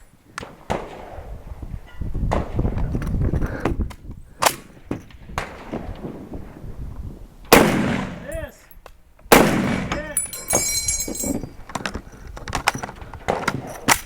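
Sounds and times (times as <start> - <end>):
gunshots: 7.5 - 8.2, 9.3 - 10.1.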